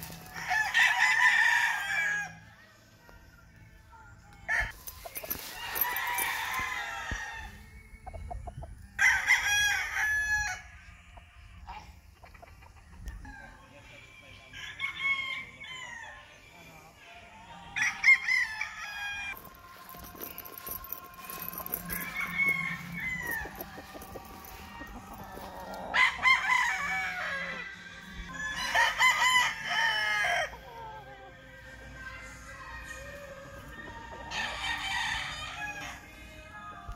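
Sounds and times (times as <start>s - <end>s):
rooster crowing: 0.2s - 2.4s, 5.4s - 7.6s, 17.8s - 31.2s, 33.9s - 36.1s.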